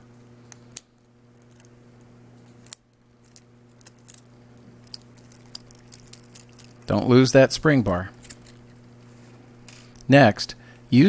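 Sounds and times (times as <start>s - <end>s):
faint steady hum: 0.0s - 11.0s
metal watch bracelet clinking: 2.5s - 7.0s, 7.9s - 8.8s.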